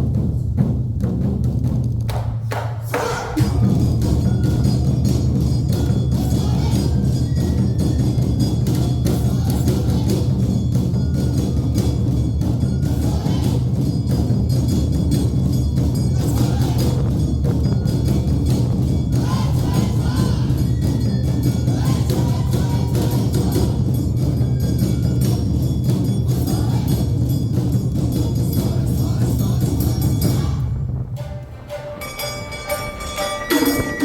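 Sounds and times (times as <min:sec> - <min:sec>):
drums beating: 0:00.0 - 0:34.0
flute and shamisen melody: 0:03.0 - 0:34.0
hand gong clanging: 0:30.1 - 0:34.0.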